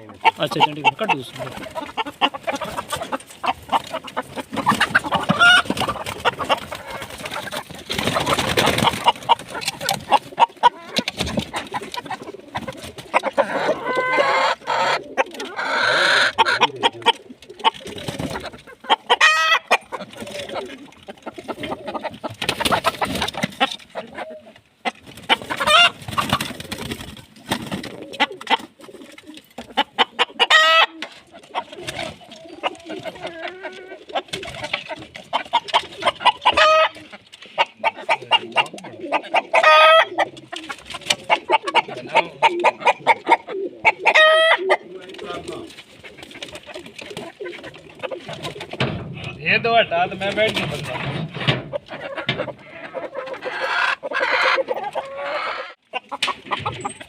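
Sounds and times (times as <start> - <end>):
chickens clucking: 0.0 - 57.0
clicks and rustling: 1.3 - 13.4.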